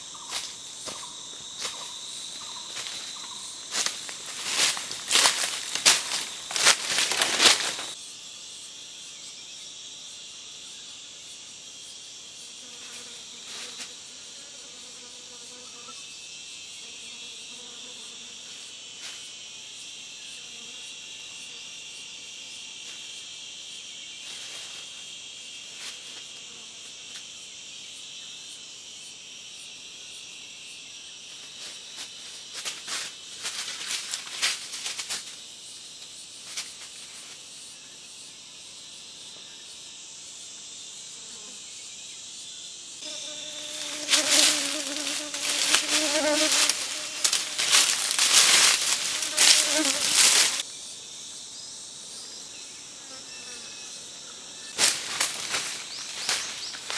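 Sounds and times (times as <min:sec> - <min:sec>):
insects chirping: 0:00.0 - 0:56.9
loud rustling: 0:03.7 - 0:08.0, 0:43.7 - 0:50.6.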